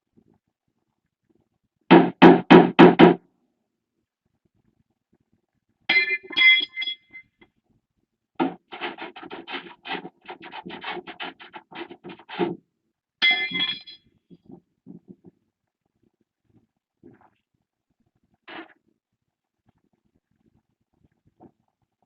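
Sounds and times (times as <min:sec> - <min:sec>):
sharp knocks: 0:01.9 - 0:03.2, 0:08.4 - 0:12.6, 0:13.2 - 0:14.0
short ringing chime: 0:05.9 - 0:07.2, 0:13.2 - 0:14.0.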